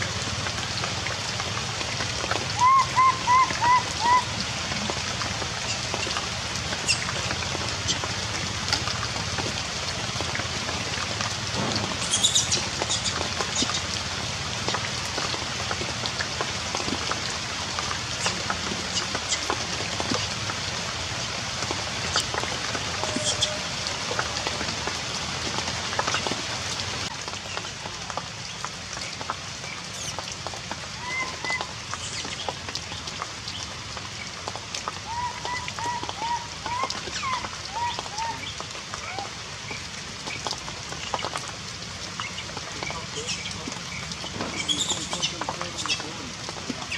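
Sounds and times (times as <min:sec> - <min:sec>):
heavy rain: 0:00.0 - 0:46.9
raindrops spattering: 0:00.0 - 0:46.9.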